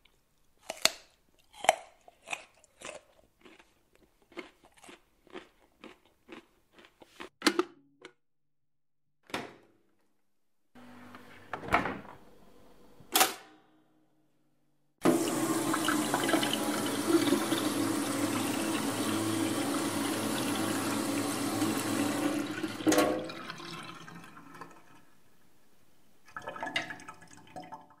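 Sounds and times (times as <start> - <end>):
water rushing into a sink: 15.0 - 25.2, 26.2 - 28.0.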